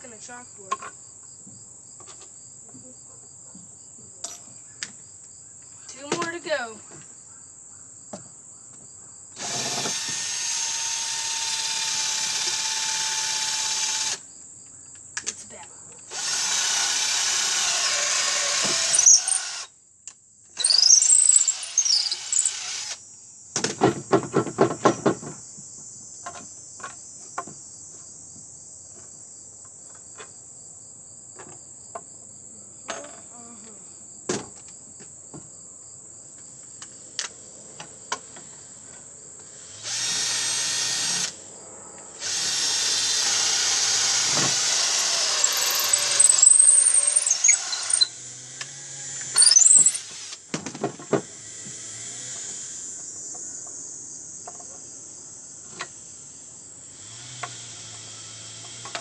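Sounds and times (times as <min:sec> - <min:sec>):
electric drill whining: 0:09.4 - 0:14.2, 0:16.1 - 0:19.7, 0:20.6 - 0:23.0, 0:39.4 - 0:41.4, 0:42.2 - 0:50.5, 0:51.2 - 0:53.1, 0:56.9 - 0:59.0.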